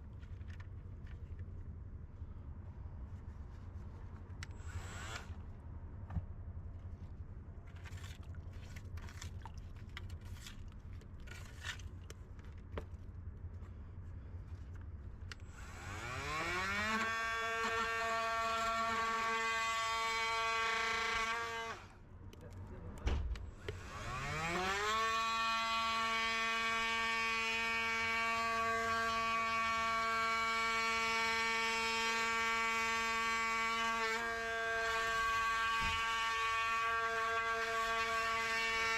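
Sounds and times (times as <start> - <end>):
small electric motor whining: 4.5 - 5.4, 15.5 - 21.9, 23.6 - 38.9.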